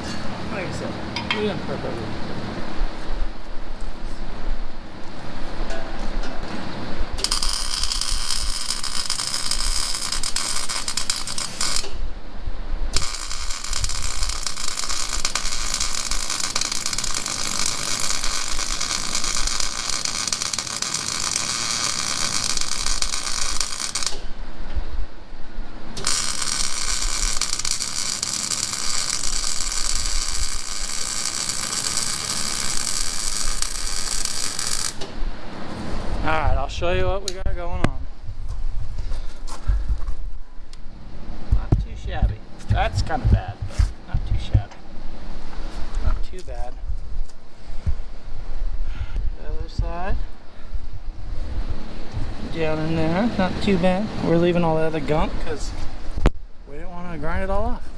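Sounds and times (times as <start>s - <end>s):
electric arc welding crackle: 7.2s - 12.0s, 12.9s - 24.4s, 25.9s - 35.1s.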